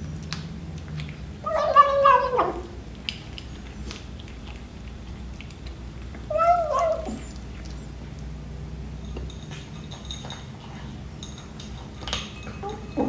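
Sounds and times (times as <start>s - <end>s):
kitten meowing while eating: 1.4s - 2.8s, 6.2s - 7.5s.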